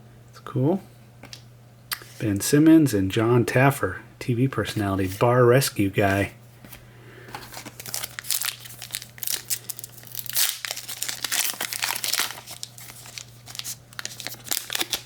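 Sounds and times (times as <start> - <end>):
steady low hum: 0.0 - 14.7
foil wrapper crinkling and tearing: 7.4 - 15.0.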